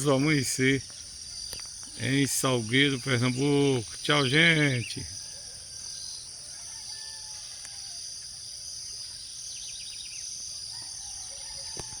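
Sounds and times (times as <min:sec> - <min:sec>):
birds chirping: 0:00.0 - 0:06.3
insects trilling: 0:00.0 - 0:12.0.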